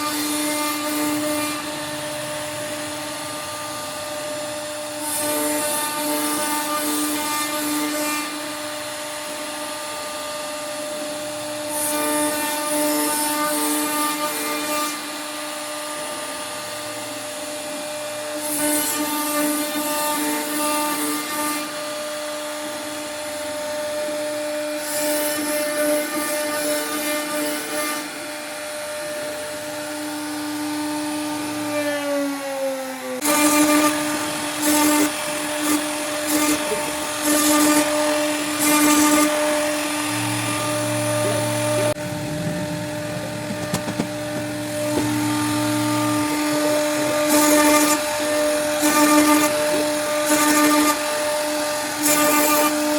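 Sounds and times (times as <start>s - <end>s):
router spindle whine: 0.0s - 52.9s
bit rasping through wood: 30.6s - 42.1s, 43.0s - 52.9s.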